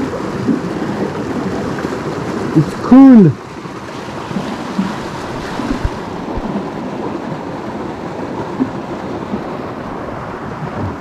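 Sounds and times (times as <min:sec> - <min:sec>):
waterfall rushing: 0:00.0 - 0:03.3
low thumps: 0:04.8 - 0:06.8.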